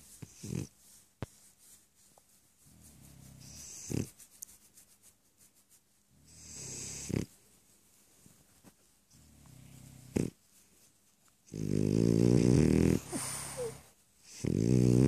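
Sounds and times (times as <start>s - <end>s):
dog snoring: 6.3s - 7.3s, 9.1s - 10.4s, 11.5s - 15.0s.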